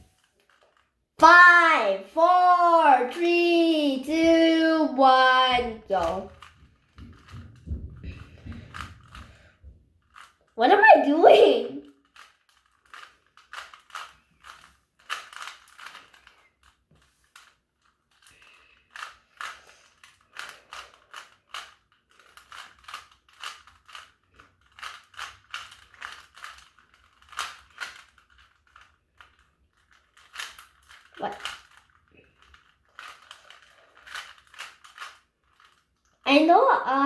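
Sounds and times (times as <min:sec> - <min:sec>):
puzzle cube plastic clicks: 0:00.2 - 0:01.3, 0:12.0 - 0:36.2.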